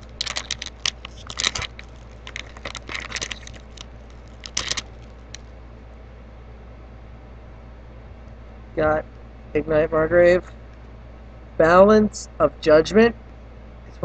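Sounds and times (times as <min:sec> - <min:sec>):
trading cards being handled: 0:00.0 - 0:05.4
foil wrapper crinkling and tearing: 0:00.0 - 0:05.5.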